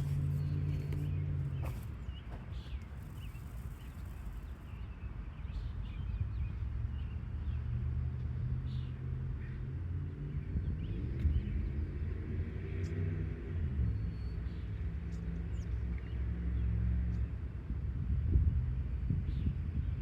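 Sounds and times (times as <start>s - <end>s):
steady low rumble: 0.0s - 4.9s
faint engine hum: 0.0s - 20.0s.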